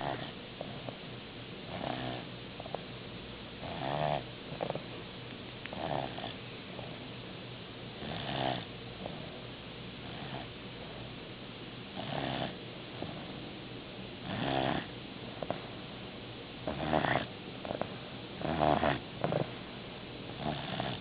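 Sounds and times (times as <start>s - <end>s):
person snoring: 16.7s - 17.8s, 18.4s - 19.5s.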